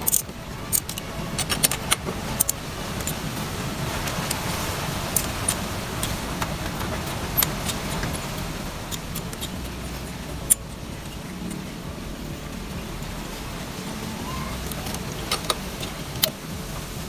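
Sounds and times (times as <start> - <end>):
metallic clicks of hand tools: 0.0 - 3.2
steady low rumble: 0.0 - 17.0.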